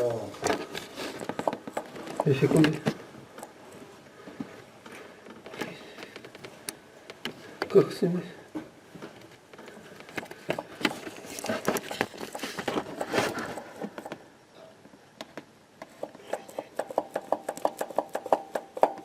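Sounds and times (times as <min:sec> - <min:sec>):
fast even clicks: 0:16.0 - 0:19.0.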